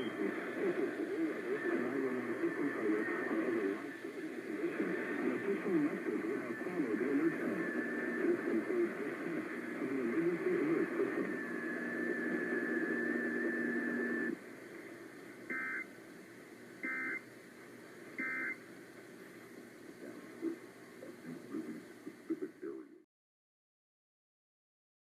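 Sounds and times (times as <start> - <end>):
radio static: 0.0 - 15.9, 19.2 - 23.1
muffled radio audio: 0.0 - 23.1.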